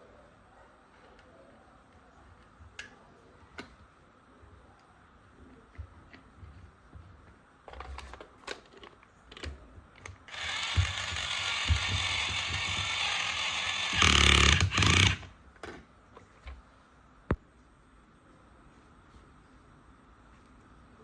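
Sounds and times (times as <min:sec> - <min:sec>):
toy drill motor whirring: 0:10.3 - 0:15.3.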